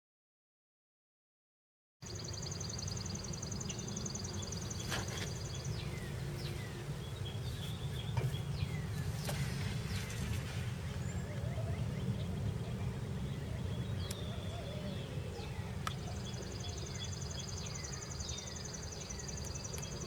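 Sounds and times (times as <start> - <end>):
steady low rumble: 2.1 - 17.9.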